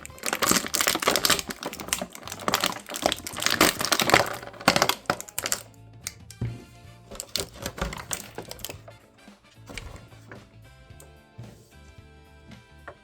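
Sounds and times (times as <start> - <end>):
plastic packaging clicks and crinkles: 0.0 - 6.4, 7.1 - 9.0, 9.6 - 10.4.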